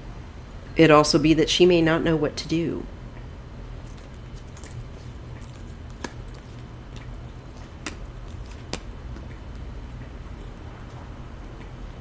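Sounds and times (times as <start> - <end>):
low room hum: 0.0 - 12.0
soft handling noises: 3.8 - 11.8.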